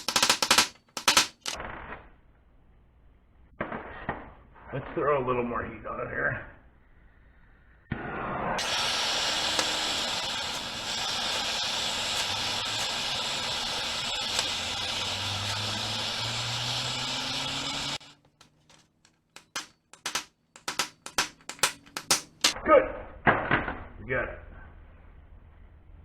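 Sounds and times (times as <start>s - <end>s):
blowtorch flame hissing: 8.4s - 18.2s.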